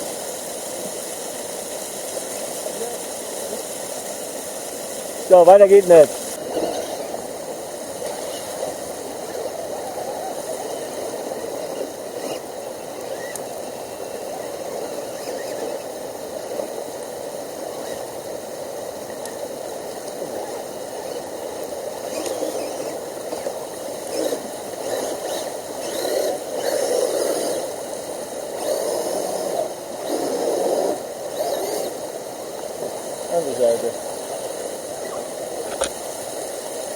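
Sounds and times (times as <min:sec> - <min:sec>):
brook water rushing: 0:00.0 - 0:36.9.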